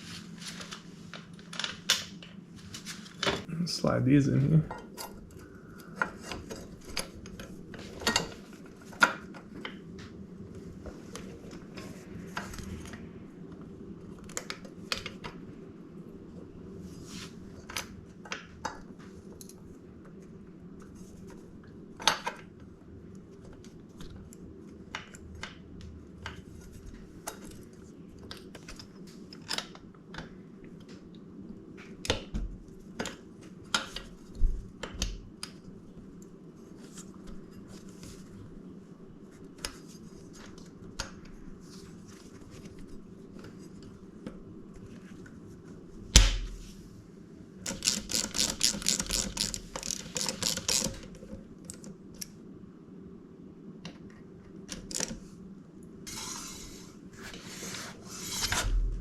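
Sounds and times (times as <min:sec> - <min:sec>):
steady low hum: 0:48.5 - 0:59.0.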